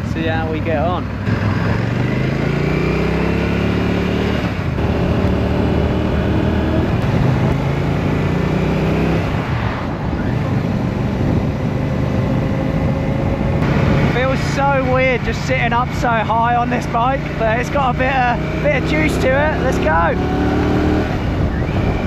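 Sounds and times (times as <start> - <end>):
motorcycle engine accelerating: 0.0 - 22.0.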